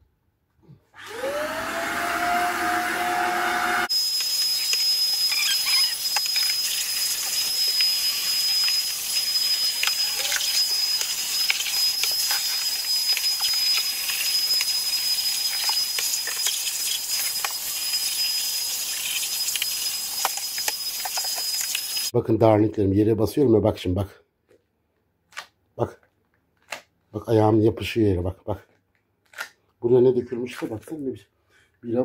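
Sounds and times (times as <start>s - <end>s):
vacuum cleaner running: 1.0s - 22.1s.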